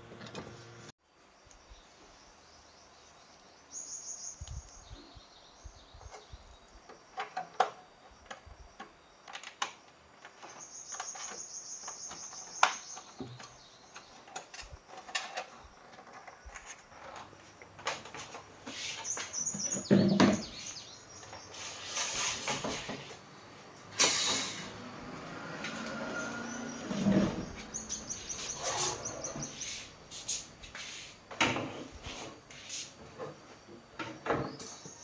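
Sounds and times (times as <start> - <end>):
high chirping trills: 26.1 - 29.9.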